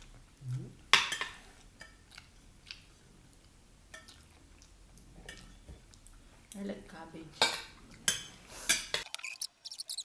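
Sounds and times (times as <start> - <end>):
cutlery clinking against a plate: 0.9 - 2.3.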